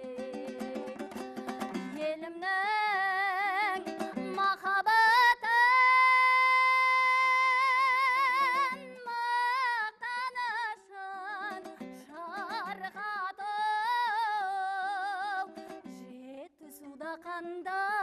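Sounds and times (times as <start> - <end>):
plucked string accompaniment: 0.0 - 4.9, 7.2 - 9.7, 11.2 - 13.5, 14.2 - 16.2
woman singing folk song: 0.0 - 18.0.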